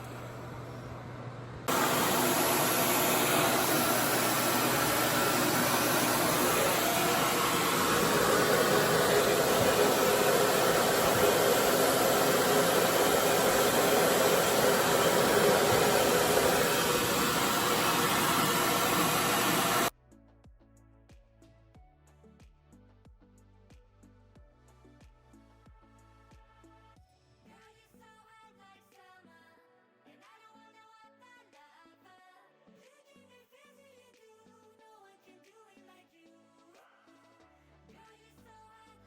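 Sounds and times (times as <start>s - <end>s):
hair dryer running: 0.0s - 19.9s.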